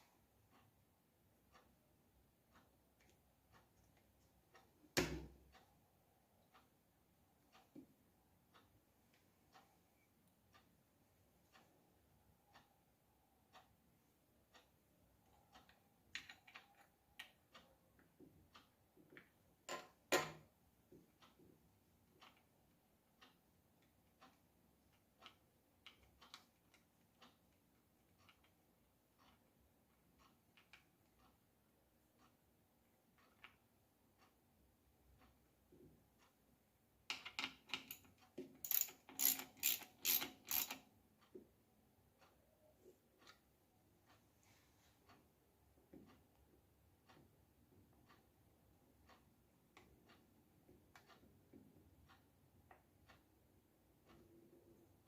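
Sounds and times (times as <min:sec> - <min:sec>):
clock ticking faintly: 0:00.0 - 0:55.0
small irregular clicks and knocks: 0:00.0 - 0:55.0
mechanism clicking and rattling: 0:15.5 - 0:17.8, 0:37.0 - 0:41.3.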